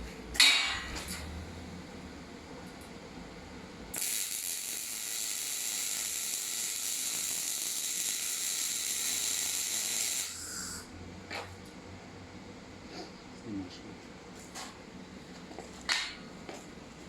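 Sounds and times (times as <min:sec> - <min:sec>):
welding arc hissing: 0:03.9 - 0:10.9.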